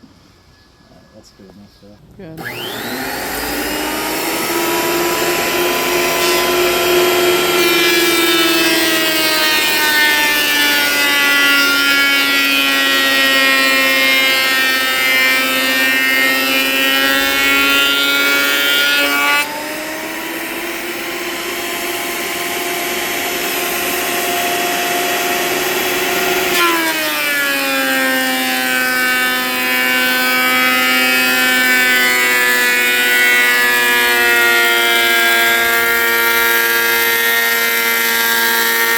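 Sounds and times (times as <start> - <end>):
electric hand planer cutting wood: 2.4 - 38.9.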